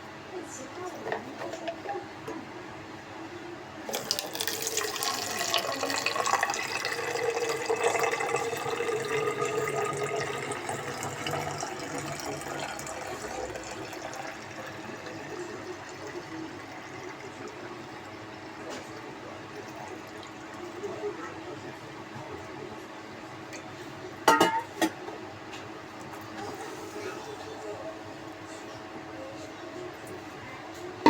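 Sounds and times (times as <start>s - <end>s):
water running from a tap: 3.9s - 18.7s.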